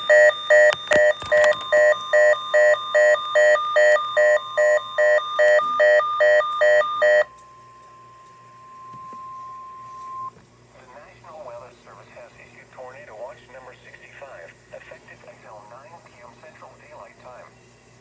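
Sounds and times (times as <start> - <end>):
steady warning alarm tone: 0.0 - 10.3
weather radio alarm beeping rapidly: 0.0 - 10.3.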